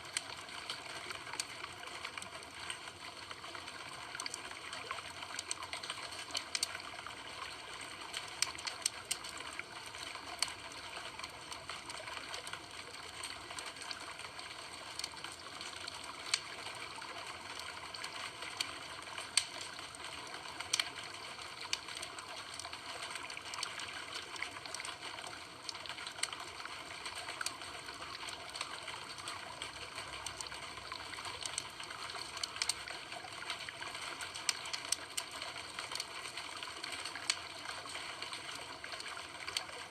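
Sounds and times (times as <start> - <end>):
campfire crackling: 5.3 - 6.8, 8.1 - 9.5, 12.5 - 16.9, 17.5 - 23.9, 28.2 - 33.5.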